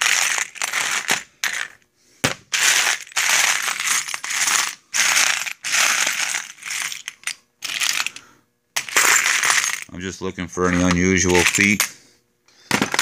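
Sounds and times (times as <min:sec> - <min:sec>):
small metal parts rattling: 0:00.0 - 0:01.8, 0:02.5 - 0:10.0, 0:10.6 - 0:12.0.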